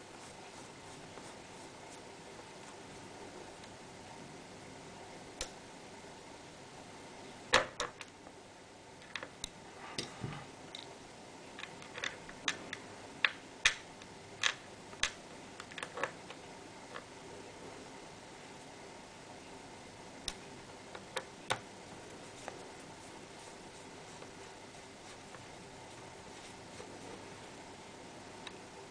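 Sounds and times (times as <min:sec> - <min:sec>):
steady low hiss: 0:00.0 - 0:28.9.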